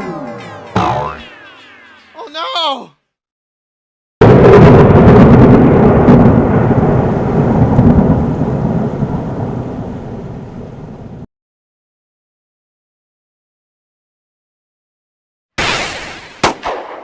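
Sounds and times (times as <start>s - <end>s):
loud crash with long rumble: 4.2s - 9.7s.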